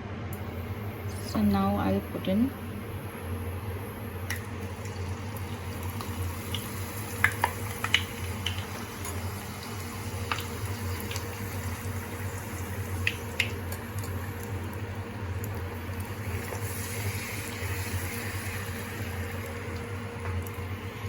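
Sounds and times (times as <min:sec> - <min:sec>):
food frying in hot oil: 0:03.3 - 0:21.0
oil popping and crackling: 0:04.2 - 0:20.7.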